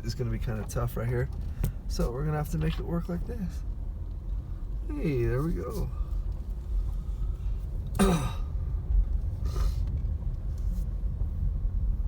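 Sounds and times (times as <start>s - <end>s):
car engine and tyres rumbling: 0.0s - 12.0s
person grunting: 8.0s - 8.4s.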